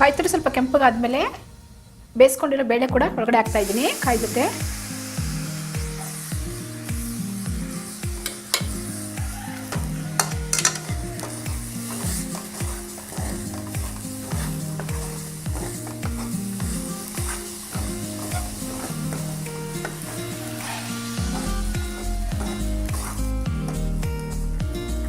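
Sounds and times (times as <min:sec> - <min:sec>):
food sizzling in a pan: 0:00.0 - 0:02.7, 0:03.4 - 0:25.0
background music with bass beat: 0:04.6 - 0:25.0
spatula scraping a pan: 0:05.4 - 0:24.0.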